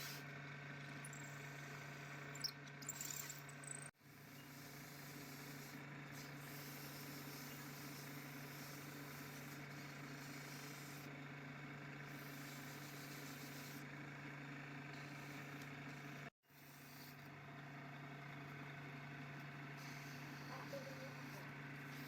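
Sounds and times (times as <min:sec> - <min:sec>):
hiss: 0:00.0 - 0:00.2, 0:04.2 - 0:11.1, 0:12.1 - 0:13.9, 0:16.6 - 0:17.2, 0:19.8 - 0:22.0
electric motor humming: 0:00.9 - 0:22.0.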